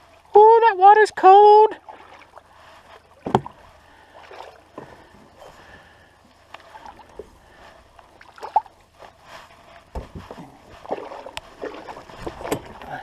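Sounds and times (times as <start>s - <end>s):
shallow water sloshing: 0.0s - 13.0s
low thump: 3.2s - 3.6s, 9.9s - 10.5s.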